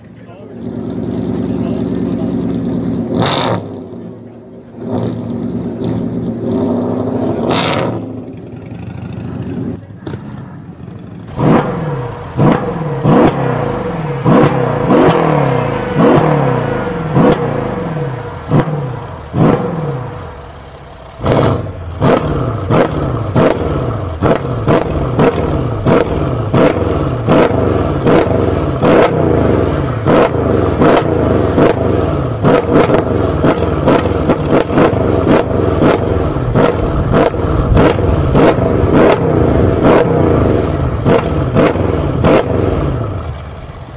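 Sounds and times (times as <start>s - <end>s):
engine revving in throttle blips: 0.4s - 10.5s, 11.3s - 43.9s.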